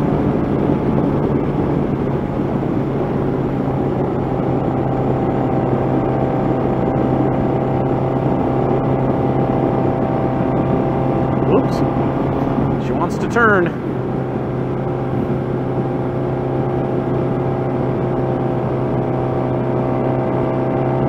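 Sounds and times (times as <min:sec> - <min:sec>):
motorcycle engine cruising: 0:00.0 - 0:21.0
wind noise: 0:00.0 - 0:21.0.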